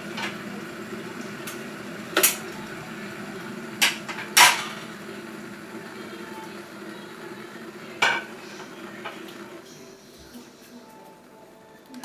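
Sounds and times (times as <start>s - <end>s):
steady low hum: 0.0s - 10.4s
kitchen items knocking and clacking: 3.8s - 4.9s.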